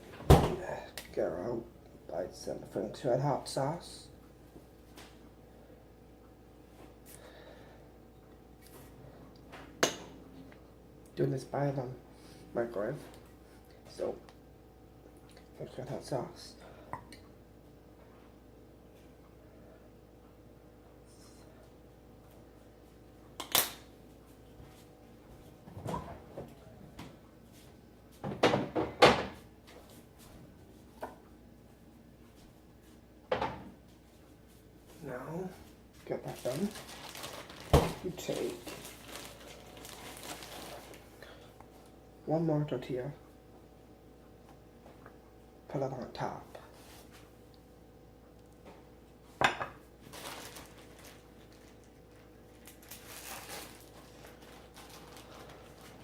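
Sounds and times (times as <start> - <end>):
knocks on kitchen counter: 28.2 - 29.4.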